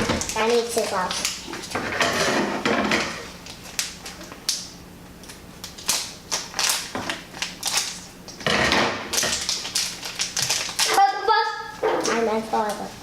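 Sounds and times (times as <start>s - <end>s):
plastic bag crinkling: 0.0s - 1.8s, 5.3s - 8.1s, 9.1s - 12.9s.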